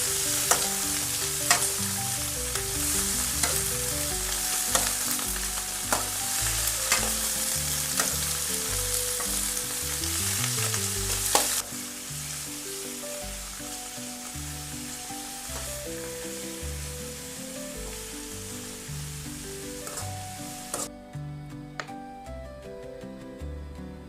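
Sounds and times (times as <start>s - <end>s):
food sizzling in hot oil: 0.0s - 20.9s
utensil clicking against pan: 0.4s - 1.8s, 3.4s - 3.7s, 5.9s - 6.2s, 6.9s - 7.3s, 8.0s - 8.3s.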